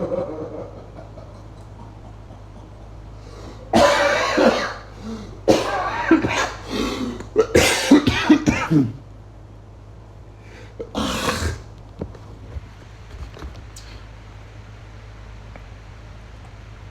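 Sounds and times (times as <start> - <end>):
person coughing and wheezing: 1.7 - 9.0, 10.8 - 11.7.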